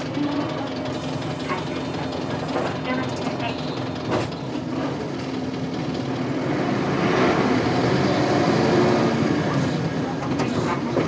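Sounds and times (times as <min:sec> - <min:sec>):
bus diesel engine running: 0:00.0 - 0:11.0.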